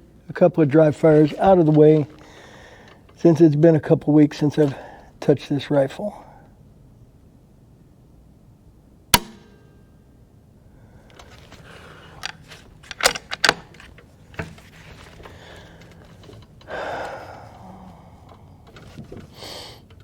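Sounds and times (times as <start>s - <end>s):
rustling: 10.9s - 20.0s
rifle action clicks and clacks: 12.2s - 14.6s.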